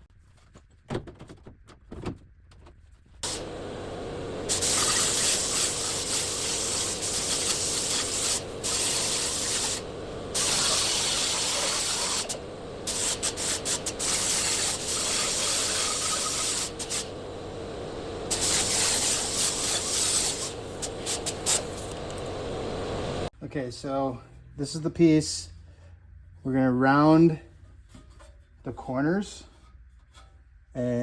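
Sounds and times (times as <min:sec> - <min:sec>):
power tool cutting sheet metal: 0:03.2 - 0:22.3.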